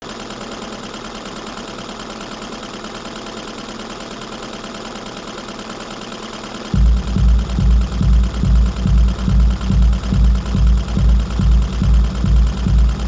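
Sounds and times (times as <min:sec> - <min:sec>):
treadle sewing machine running: 0:00.0 - 0:06.8.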